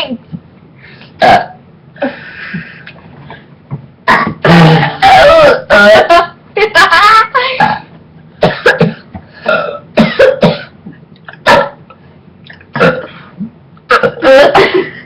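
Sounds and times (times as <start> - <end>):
people burping: 1.2 - 1.6, 4.1 - 6.3, 8.4 - 10.7, 11.3 - 11.8, 12.5 - 14.8.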